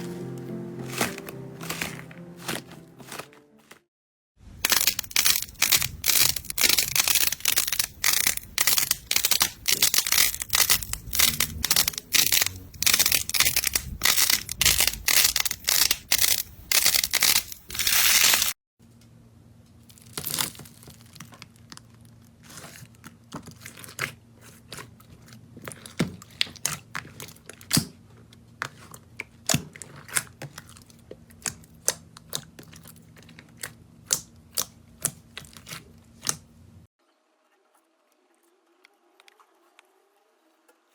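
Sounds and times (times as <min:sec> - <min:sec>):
slime crackling and crunching: 0:00.0 - 0:03.8, 0:04.6 - 0:18.6, 0:19.9 - 0:22.8
sharp clicks and pops: 0:04.6 - 0:18.5.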